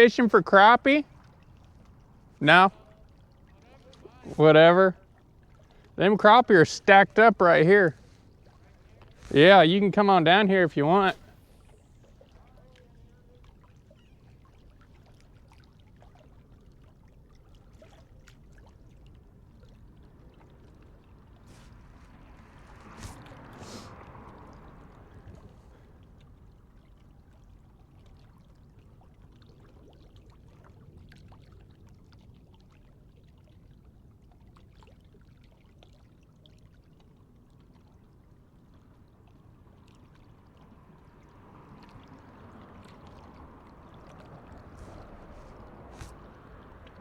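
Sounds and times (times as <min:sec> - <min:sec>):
lake water lapping: 0:00.0 - 0:47.0
low wind rumble: 0:40.8 - 0:47.0.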